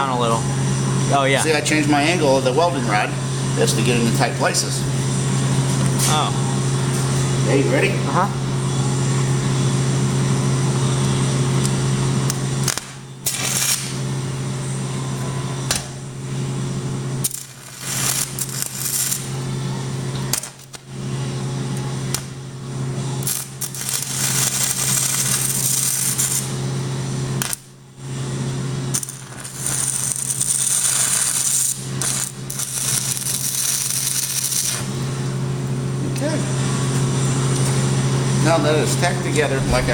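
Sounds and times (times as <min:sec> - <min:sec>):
welding arc crackling and buzzing: 0:00.0 - 0:39.9.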